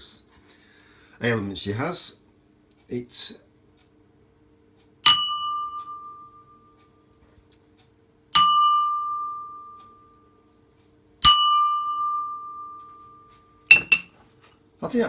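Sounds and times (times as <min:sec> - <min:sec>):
bowl struck with pestle ringing: 0:05.1 - 0:06.1, 0:08.4 - 0:09.5, 0:11.2 - 0:12.6, 0:13.7 - 0:14.1.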